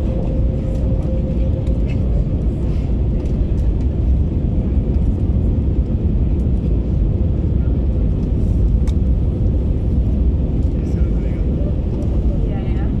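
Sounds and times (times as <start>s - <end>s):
engine rumble and rushing air: 0.0s - 13.0s.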